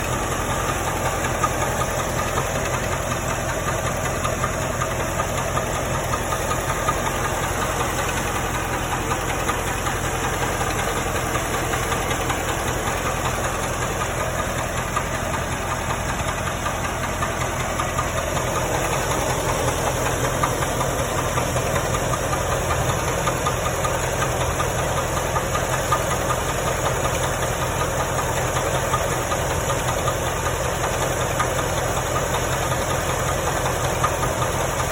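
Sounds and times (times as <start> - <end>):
car engine running: 0.0 - 34.9
fast even engine knocking: 0.0 - 34.9.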